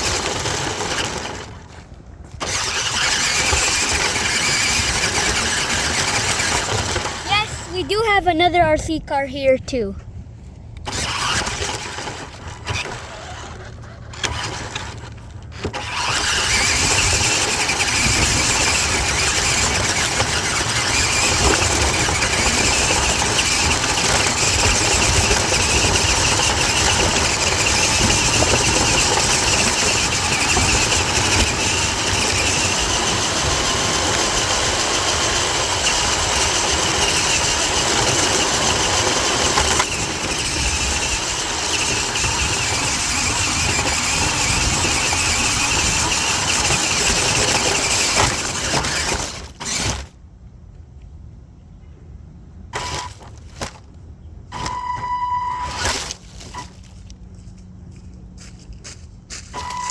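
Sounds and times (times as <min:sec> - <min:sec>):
toy truck motor whining: 0:00.0 - 0:01.8, 0:02.4 - 0:08.4, 0:10.8 - 0:50.2, 0:52.8 - 0:53.8, 0:54.5 - 0:57.1, 0:59.4 - 0:59.9
wheels rolling: 0:00.0 - 0:08.0, 0:10.0 - 0:50.2, 0:52.8 - 0:59.9.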